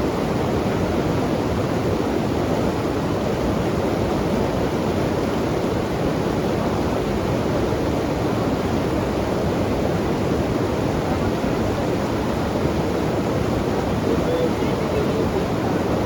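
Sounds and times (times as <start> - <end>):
river rushing: 4.8 - 16.0.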